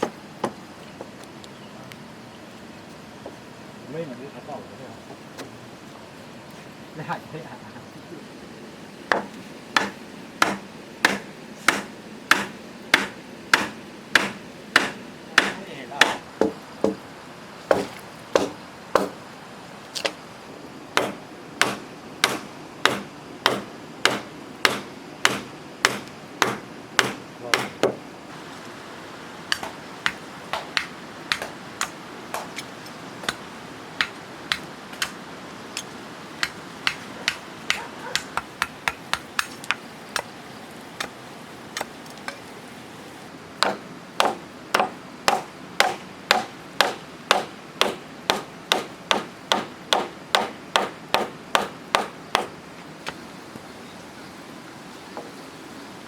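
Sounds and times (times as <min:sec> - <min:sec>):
hammer blows on wood: 0:09.1 - 0:17.0, 0:17.7 - 0:19.2, 0:21.0 - 0:28.0, 0:43.6 - 0:52.6.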